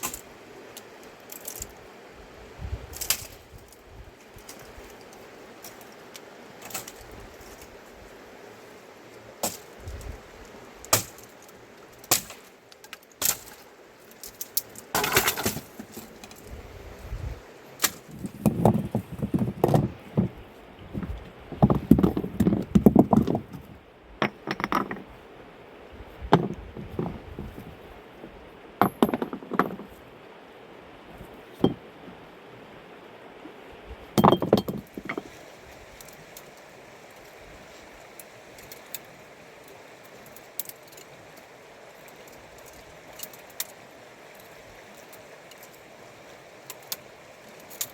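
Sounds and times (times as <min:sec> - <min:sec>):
steady background hiss: 0:00.0 - 0:47.9
hard objects knocking and clinking: 0:24.2 - 0:25.1, 0:26.4 - 0:27.5, 0:28.8 - 0:30.0, 0:34.2 - 0:35.3.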